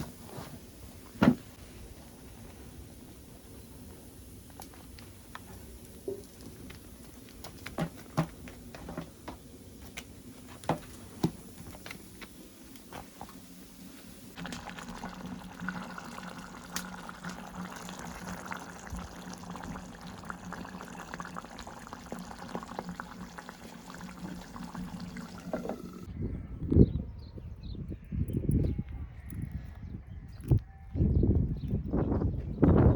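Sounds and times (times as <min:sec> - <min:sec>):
liquid pouring or bubbling: 0:13.2 - 0:26.1.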